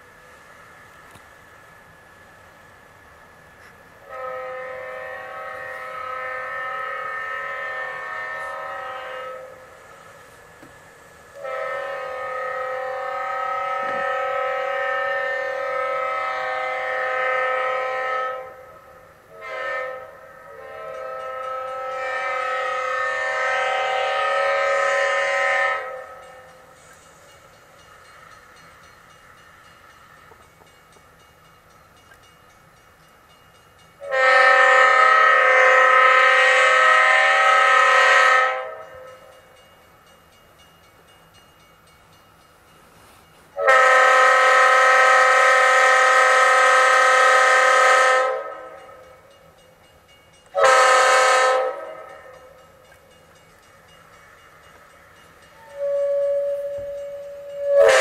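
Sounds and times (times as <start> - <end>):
locomotive air horn blasts: 4.0 - 9.9, 11.4 - 27.0, 34.0 - 39.4, 43.5 - 49.2, 50.5 - 52.9, 55.5 - 58.0.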